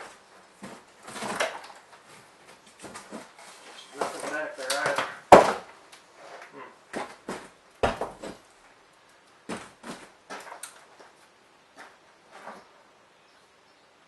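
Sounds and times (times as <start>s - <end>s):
boards knocking and scraping: 0.0s - 8.4s.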